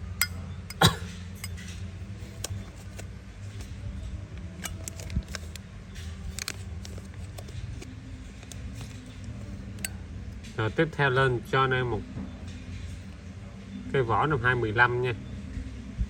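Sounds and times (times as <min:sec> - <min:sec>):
steady low hum: 0:00.0 - 0:04.8.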